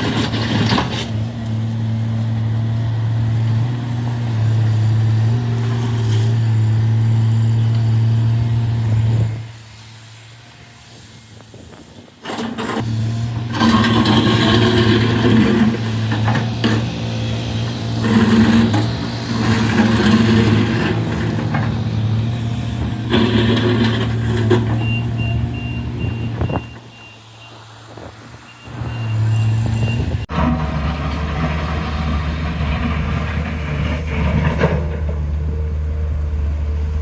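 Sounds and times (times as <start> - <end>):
diesel engine humming: 0.0 - 37.0
reversing alarm beeping: 24.8 - 27.6, 28.4 - 30.3.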